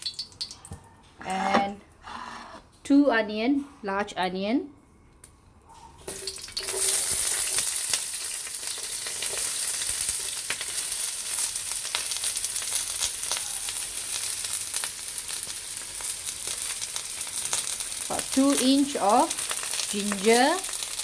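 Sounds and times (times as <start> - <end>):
crackles of frying: 0.0 - 0.8, 6.0 - 21.0
onions sizzling in hot oil: 6.1 - 21.0.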